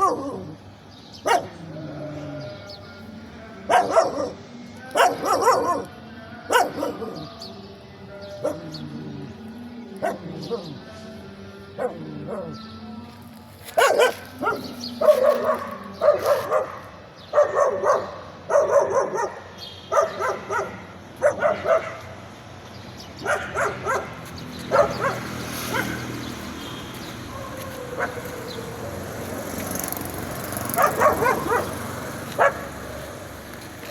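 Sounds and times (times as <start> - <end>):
dog barking: 0.0 - 0.6, 1.2 - 1.6, 3.7 - 5.9, 6.5 - 7.3, 8.4 - 8.8, 10.0 - 10.8, 11.8 - 12.7, 13.7 - 22.2, 23.2 - 26.2, 27.3 - 29.0, 30.5 - 33.2.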